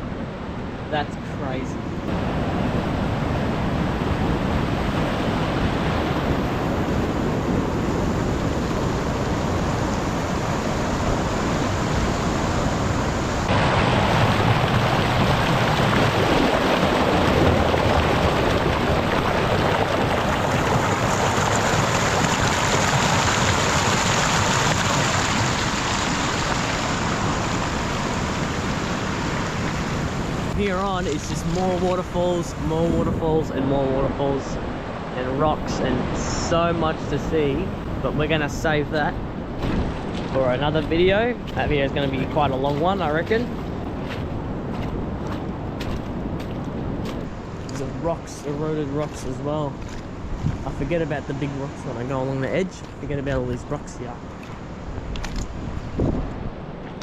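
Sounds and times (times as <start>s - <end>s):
sea surf: 0.0s - 57.0s
water rushing off rocks: 2.1s - 43.9s.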